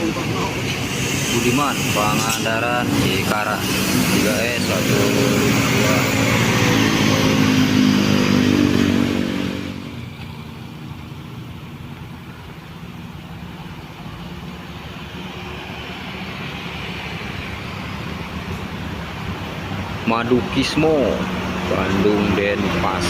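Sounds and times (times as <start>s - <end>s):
bus diesel engine passing: 0.0s - 23.0s
traffic engine rumble: 0.0s - 23.0s.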